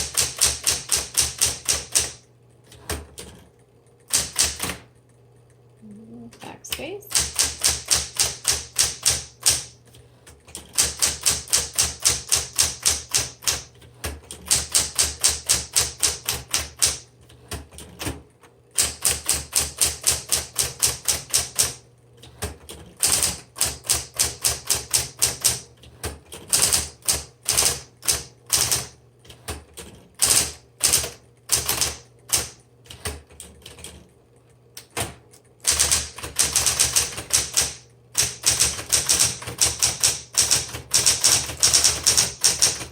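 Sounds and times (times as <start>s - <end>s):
typewriter type-bar strikes: 0.0s - 2.2s, 4.1s - 4.9s, 7.1s - 9.8s, 10.5s - 18.2s, 18.8s - 21.8s, 22.4s - 29.6s, 30.2s - 34.0s, 34.8s - 42.9s
typewriter motor hum: 0.0s - 5.6s, 7.1s - 34.1s, 34.8s - 42.9s.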